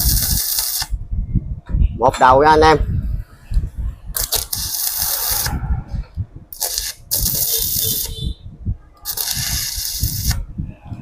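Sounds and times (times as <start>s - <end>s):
welding arc crackling: 0.0s - 1.0s, 4.2s - 5.6s, 6.5s - 8.2s, 9.0s - 10.4s.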